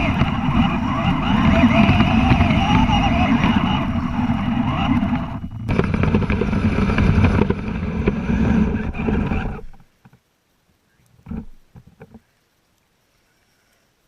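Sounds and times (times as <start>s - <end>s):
toy snow vehicle motor and tracks: 0.0s - 9.8s.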